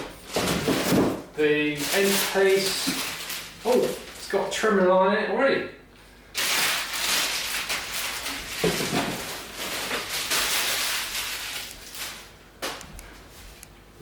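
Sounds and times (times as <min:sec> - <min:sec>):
packaging rustling and crinkling: 0:00.0 - 0:04.5, 0:06.4 - 0:12.8.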